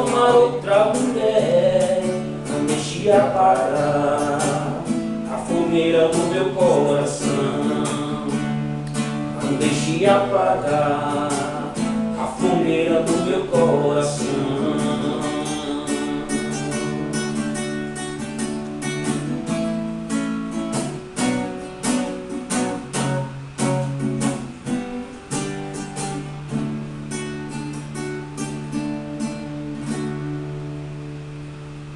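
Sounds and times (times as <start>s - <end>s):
acoustic guitar strumming: 0.0s - 31.9s.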